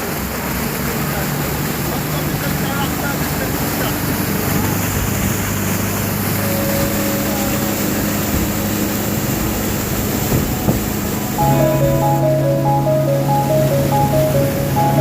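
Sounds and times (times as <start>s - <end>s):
boat engine hum: 0.0s - 15.0s
wind and water rushing: 0.0s - 15.0s
simple melody music: 6.3s - 15.0s.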